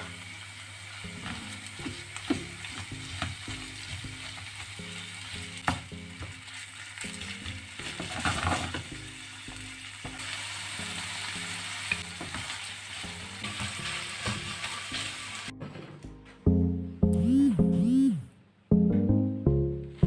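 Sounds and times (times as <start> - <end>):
food sizzling in a pan: 0.0 - 15.5.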